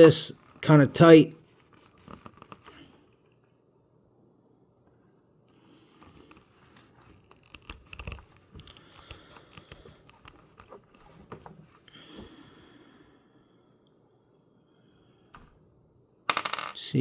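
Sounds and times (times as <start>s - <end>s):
cable wires clicking and rustling: 1.4s - 3.4s, 6.1s - 11.7s.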